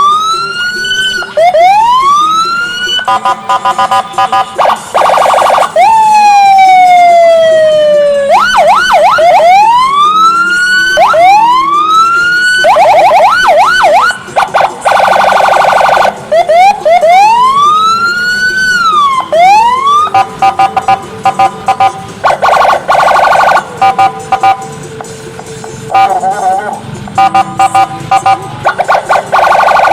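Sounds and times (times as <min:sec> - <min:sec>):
electronic vehicle siren: 0:00.0 - 0:25.1, 0:25.9 - 0:29.9.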